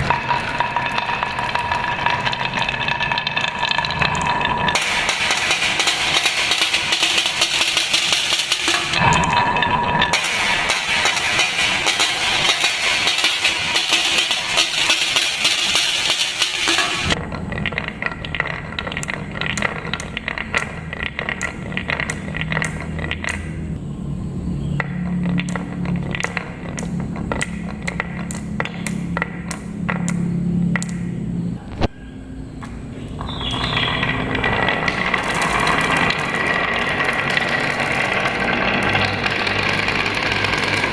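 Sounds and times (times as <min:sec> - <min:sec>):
marbles clattering on wooden run: 0:00.0 - 0:23.8, 0:24.8 - 0:31.2, 0:33.1 - 0:40.9
marbles clicking and knocking: 0:00.0 - 0:23.8, 0:24.8 - 0:31.9, 0:32.6 - 0:40.9
marbles rolling on wooden track: 0:00.0 - 0:23.8, 0:24.8 - 0:31.3, 0:32.7 - 0:40.9.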